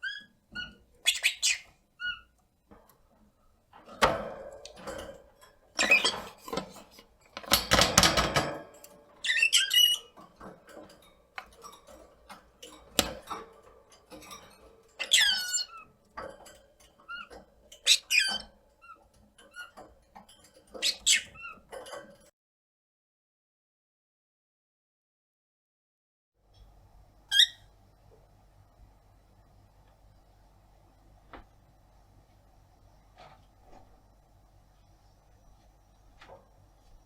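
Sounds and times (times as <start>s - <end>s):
lovebird squawking: 0.0s - 2.3s.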